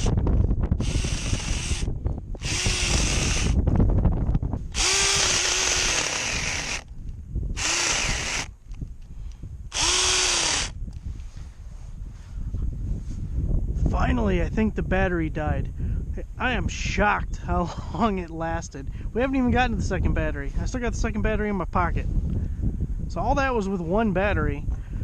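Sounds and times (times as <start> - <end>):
electric chainsaw motor bursts: 0.8 - 3.6, 4.7 - 6.9, 7.6 - 8.5, 9.7 - 10.8.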